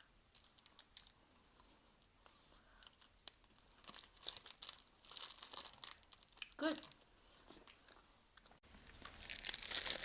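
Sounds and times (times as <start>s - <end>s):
plastic wrapper crinkling: 0.0s - 1.3s, 2.8s - 7.0s, 8.7s - 10.0s.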